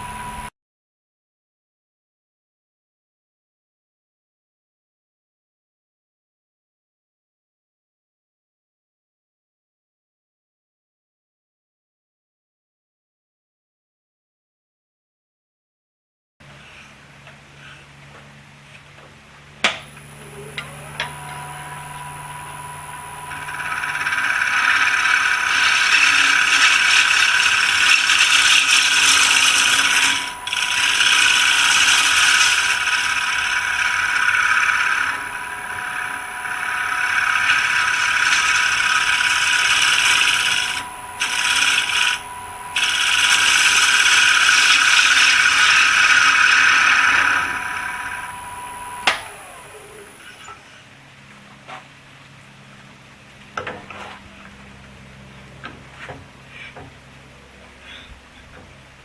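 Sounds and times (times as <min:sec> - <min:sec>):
faint motor whine: 0:00.0 - 0:00.5, 0:16.4 - 0:59.0
turning tool scraping wood: 0:20.5 - 0:50.9, 0:55.6 - 0:57.0.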